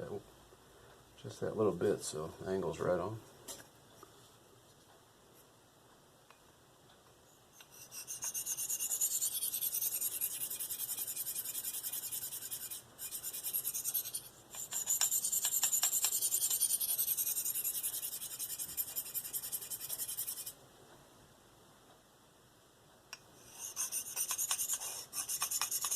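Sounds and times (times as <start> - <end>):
knife scraping on ceramic stone: 7.6 - 20.6, 23.4 - 25.9.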